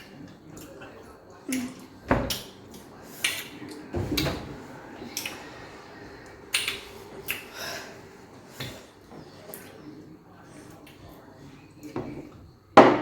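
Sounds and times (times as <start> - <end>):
mouth smacks and clicks: 6.5 - 7.5.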